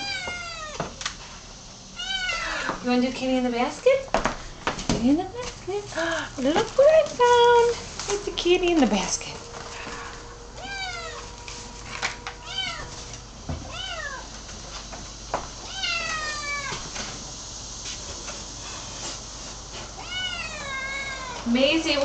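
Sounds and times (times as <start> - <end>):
kitten meowing: 2.0 - 2.6, 10.6 - 11.2, 12.4 - 12.9, 13.7 - 14.3, 20.0 - 21.4.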